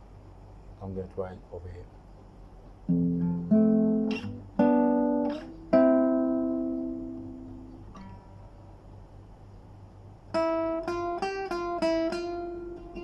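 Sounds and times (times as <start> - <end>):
guitar chords strummed: 2.9 - 8.3, 10.3 - 13.0.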